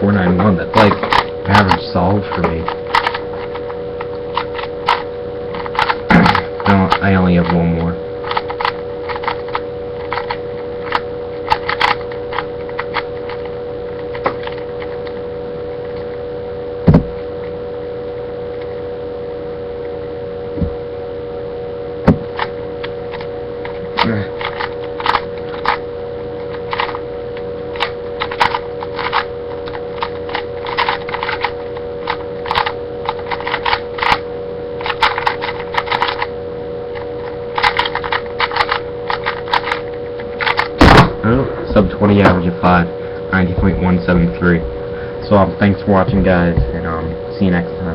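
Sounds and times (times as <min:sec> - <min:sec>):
electrical hum: 0:00.0 - 0:47.9
sharp knocks: 0:16.8 - 0:17.2, 0:22.0 - 0:22.4
plastic puzzle cube clicking: 0:27.8 - 0:29.3, 0:30.0 - 0:31.5, 0:32.4 - 0:34.2, 0:34.8 - 0:36.2, 0:37.6 - 0:39.8.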